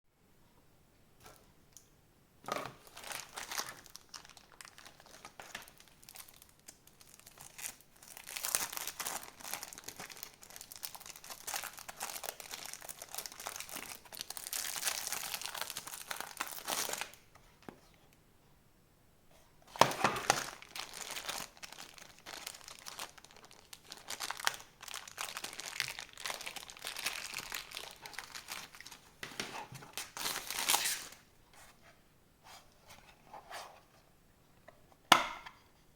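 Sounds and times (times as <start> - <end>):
plastic packaging crinkling: 2.6 - 17.2, 19.7 - 31.2.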